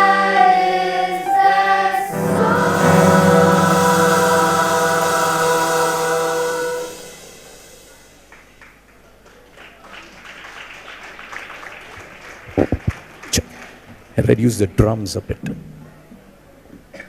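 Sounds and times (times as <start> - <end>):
choir holding a chord: 0.0 - 8.3
faint hall noise: 0.0 - 9.8.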